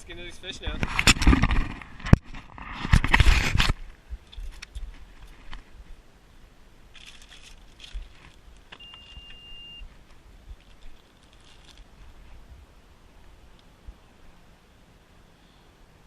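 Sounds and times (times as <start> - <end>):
rustling and handling noises: 0.6 - 6.0, 6.9 - 12.5
high-pitched beep: 8.8 - 9.8.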